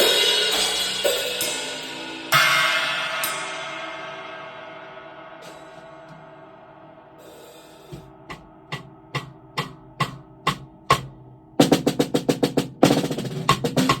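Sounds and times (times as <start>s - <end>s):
cymbal wash: 0.0s - 9.2s
snare rolls and drum fills: 7.8s - 14.0s
drum hits: 7.9s - 14.0s.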